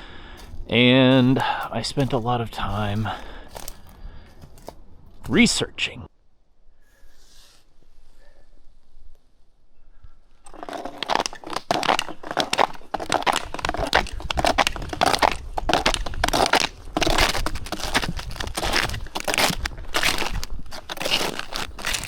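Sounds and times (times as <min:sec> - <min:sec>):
footsteps crunching on brittle ground: 0:00.0 - 0:05.5, 0:10.5 - 0:22.0.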